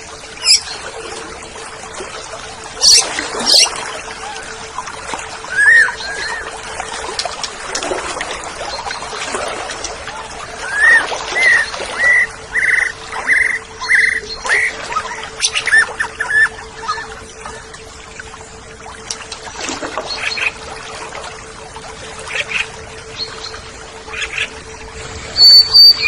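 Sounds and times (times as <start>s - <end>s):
faint hum and hiss: 0.0s - 26.0s
bird singing: 0.4s - 0.8s, 2.8s - 4.5s, 5.4s - 6.6s, 10.6s - 17.7s, 25.4s - 26.0s.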